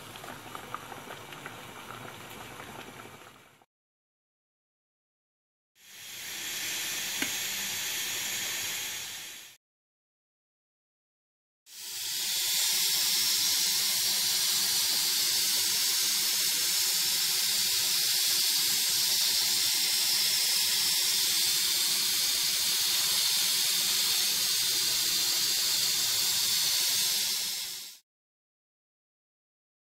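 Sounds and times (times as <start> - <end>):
steady steam-like hiss: 5.8 - 9.6, 11.7 - 28.0.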